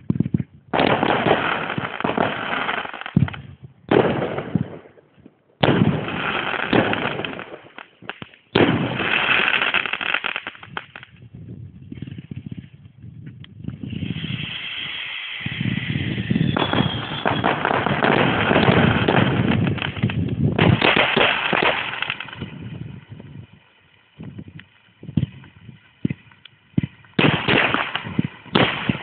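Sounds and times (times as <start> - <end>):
fireworks crackling and banging: 0.0 - 29.0
firework whistling hiss: 8.8 - 11.1, 13.6 - 29.0.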